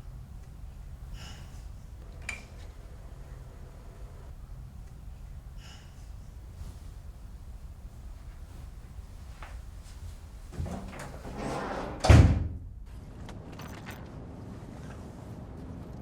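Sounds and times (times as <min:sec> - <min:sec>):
sliding door slamming shut: 0:10.5 - 0:12.7.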